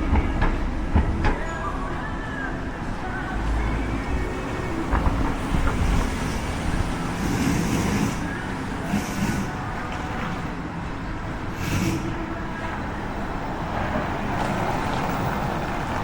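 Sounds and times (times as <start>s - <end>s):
rumble of motor vehicles: 0.0s - 16.0s
vehicles passing swooshes: 3.3s - 16.0s.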